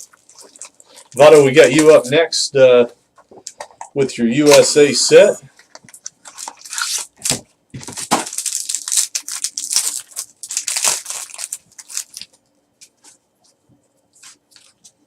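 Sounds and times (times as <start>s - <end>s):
packaging tearing and crinkling: 6.0s - 12.4s.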